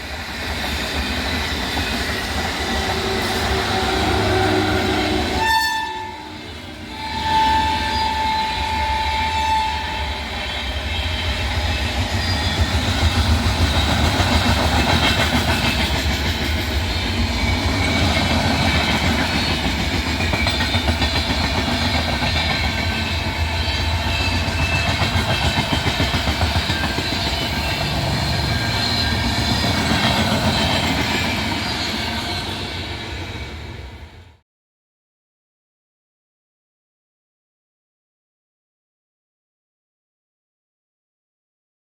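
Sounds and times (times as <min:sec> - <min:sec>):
train wheels clattering on track: 0:00.0 - 0:04.2, 0:10.7 - 0:32.8
locomotive horn: 0:02.6 - 0:11.4.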